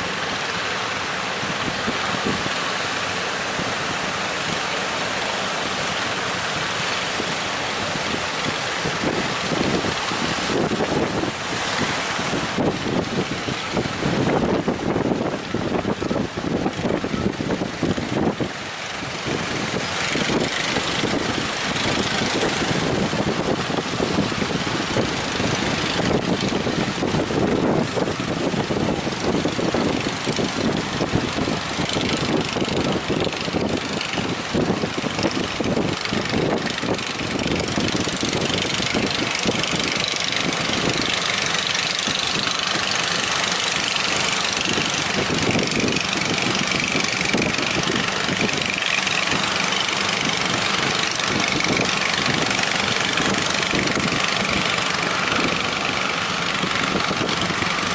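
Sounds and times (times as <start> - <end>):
boat engine running: 0.0 - 57.9
dense wash of noise: 0.0 - 57.9.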